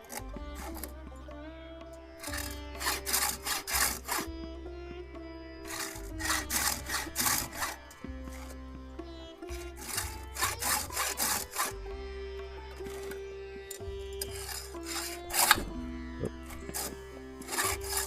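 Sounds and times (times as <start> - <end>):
file rasping on chainsaw chain: 0.0 - 0.9, 2.2 - 4.3, 5.7 - 8.6, 9.5 - 11.8, 14.2 - 15.7, 16.5 - 18.0.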